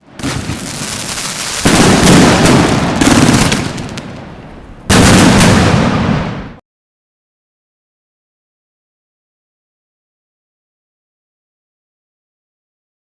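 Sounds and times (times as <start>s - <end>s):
fireworks bangs and crackles: 0.0s - 6.6s.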